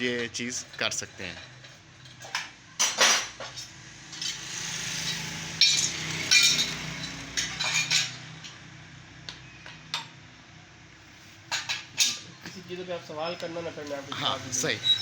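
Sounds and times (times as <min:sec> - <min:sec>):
metal tools clinking on engine: 0:05.0 - 0:08.6.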